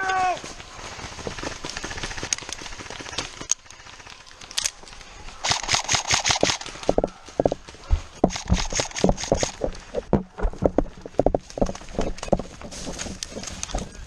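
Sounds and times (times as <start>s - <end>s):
airsoft guns firing: 5.4s - 7.1s.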